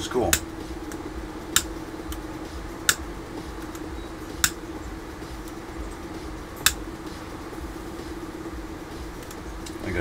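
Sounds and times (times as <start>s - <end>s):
low hum: 0.0s - 10.0s
torch igniter clicks: 0.1s - 4.8s, 5.4s - 6.9s, 9.1s - 9.8s.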